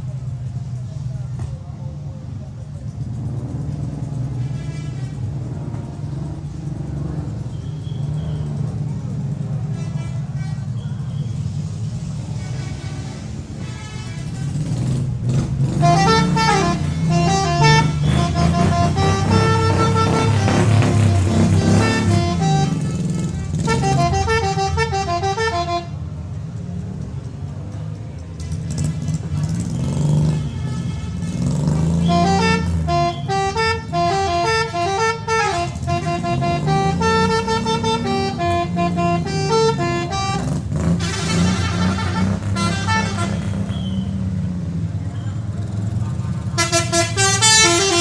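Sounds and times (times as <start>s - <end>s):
engine running low: 0.0s - 48.0s
multi-tone bus horn tune: 4.2s - 5.5s, 9.6s - 10.8s, 12.3s - 15.0s, 15.7s - 26.2s, 30.2s - 43.8s, 46.4s - 48.0s.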